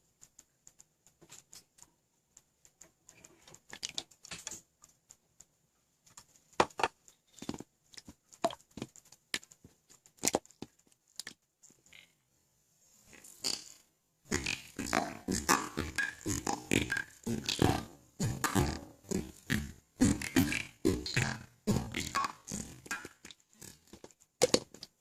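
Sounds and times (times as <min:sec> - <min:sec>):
pops of trapped air: 0:14.3 - 0:24.8
hands squishing slime: 0:14.3 - 0:25.0.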